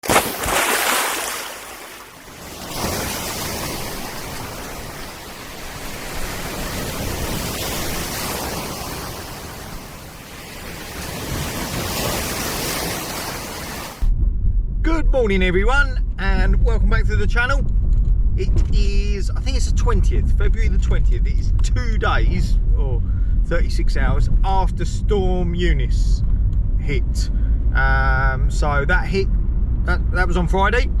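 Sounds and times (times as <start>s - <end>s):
rough sea surf breaking: 0.0s - 14.2s
high wind: 0.0s - 31.0s.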